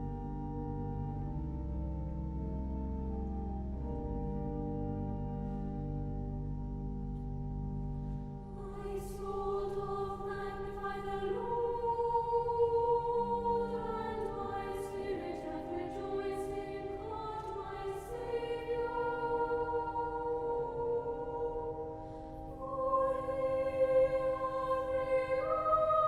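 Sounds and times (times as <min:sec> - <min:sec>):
instrumental chord with deep bass: 0:00.0 - 0:08.6
choir singing sustained notes: 0:08.4 - 0:26.0.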